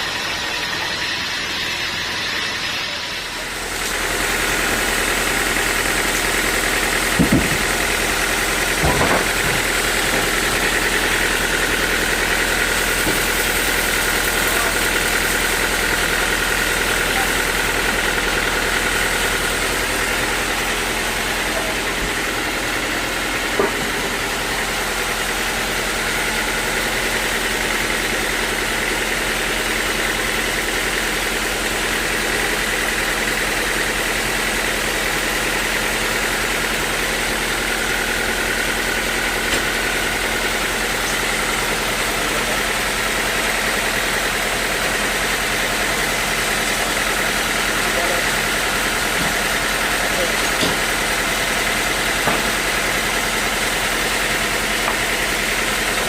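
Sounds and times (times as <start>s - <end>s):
high machine whine: 0.0s - 56.0s
sawmill machinery drone: 0.0s - 56.0s
short knocks: 7.2s - 7.7s.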